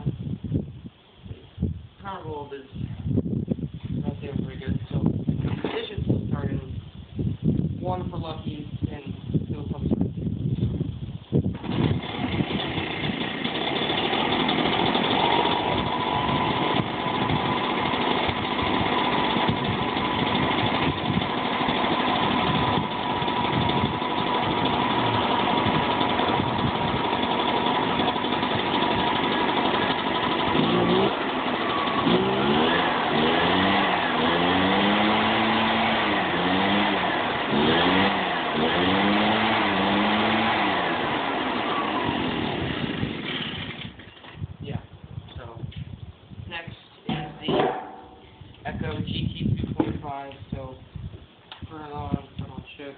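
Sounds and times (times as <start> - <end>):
two-stroke engine revving: 11.5 - 44.4.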